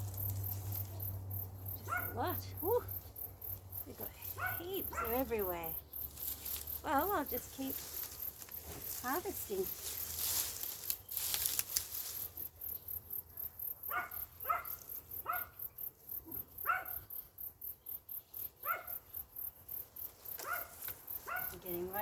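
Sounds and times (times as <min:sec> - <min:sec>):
digging in dry soil: 0:00.0 - 0:13.2, 0:20.0 - 0:22.0
dog barking: 0:01.7 - 0:02.8, 0:04.2 - 0:05.4, 0:13.8 - 0:15.6, 0:16.3 - 0:17.1, 0:18.6 - 0:19.1, 0:20.4 - 0:21.6.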